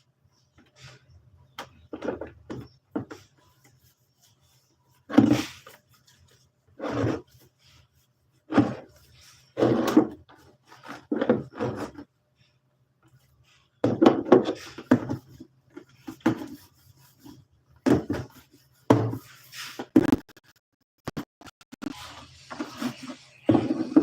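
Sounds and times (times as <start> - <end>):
household things rubbing and knocking: 1.8 - 7.8, 8.4 - 12.2, 13.7 - 20.5, 21.8 - 24.0.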